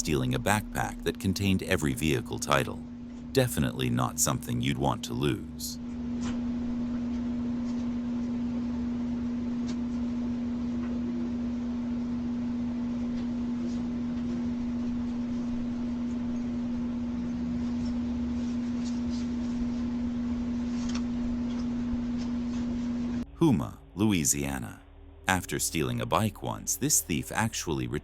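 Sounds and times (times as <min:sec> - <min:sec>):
steady humming tone: 0:00.0 - 0:28.0
faint background hiss: 0:23.3 - 0:28.0.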